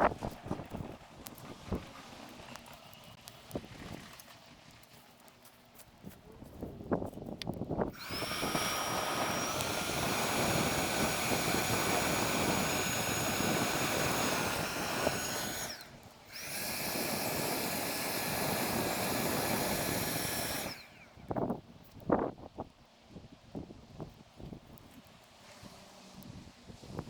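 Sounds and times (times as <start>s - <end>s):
small fan whining: 6.4s - 27.0s.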